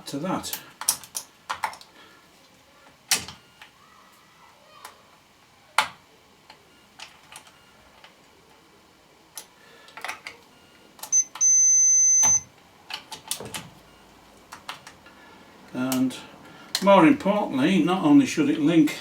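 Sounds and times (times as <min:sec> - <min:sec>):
multimeter beeping: 0:10.6 - 0:12.5
test probes clicking and tapping: 0:11.0 - 0:13.6.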